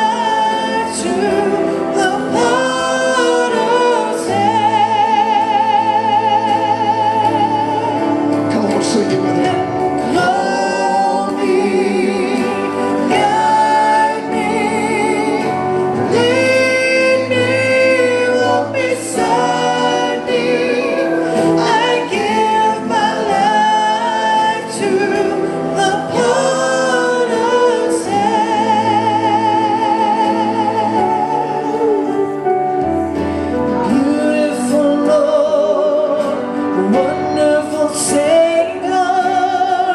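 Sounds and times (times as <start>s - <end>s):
voices singing: 0.0s - 8.6s, 9.6s - 32.4s.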